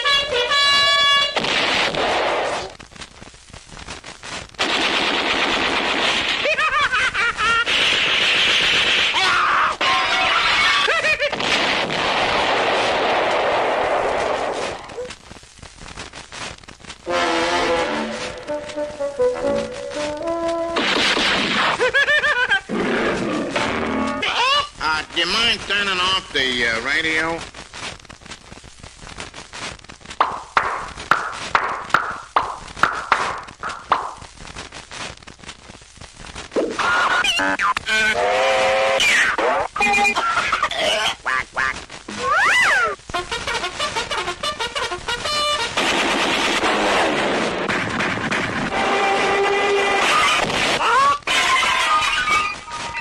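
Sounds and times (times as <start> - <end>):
cartoon hiss: 40.1 - 43.1.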